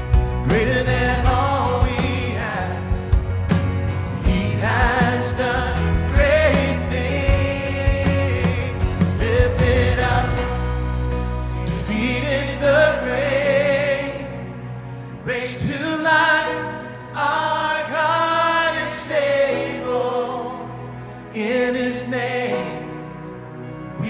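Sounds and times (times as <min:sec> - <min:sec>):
instrumental backing: 0:00.0 - 0:13.7
singers holding long notes: 0:00.0 - 0:24.0.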